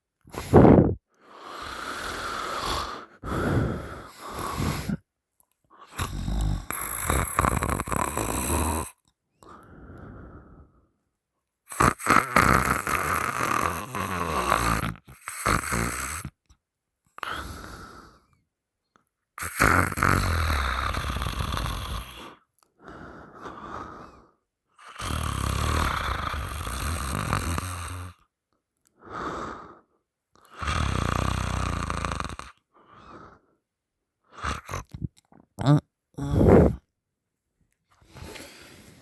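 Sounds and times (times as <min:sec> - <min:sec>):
person snoring loudly: 0:00.3 - 0:05.0, 0:05.8 - 0:10.5, 0:11.7 - 0:16.4, 0:17.2 - 0:18.2, 0:19.4 - 0:22.4, 0:24.8 - 0:28.3, 0:30.5 - 0:33.4, 0:34.3 - 0:36.9
breathing out: 0:00.3 - 0:05.1, 0:36.2 - 0:36.9, 0:38.0 - 0:39.0.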